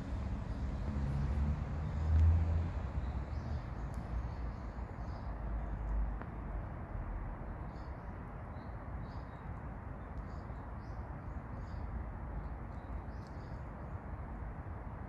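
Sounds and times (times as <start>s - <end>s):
low outdoor rumble: 0.0s - 4.0s.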